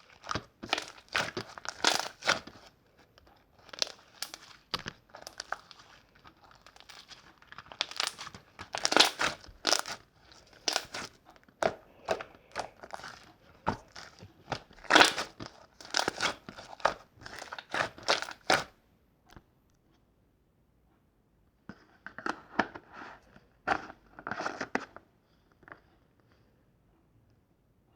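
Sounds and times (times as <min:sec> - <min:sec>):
slime squishing and popping: 0:00.0 - 0:02.7, 0:03.6 - 0:18.7.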